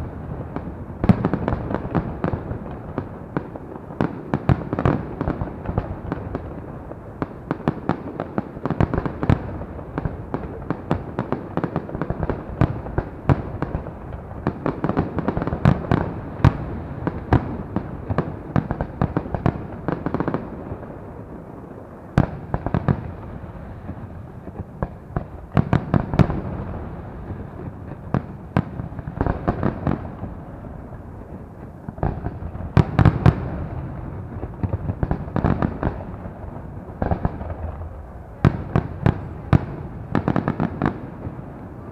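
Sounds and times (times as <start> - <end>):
fireworks crackling: 0.0 - 41.9
loud firework bangs: 22.1 - 41.9.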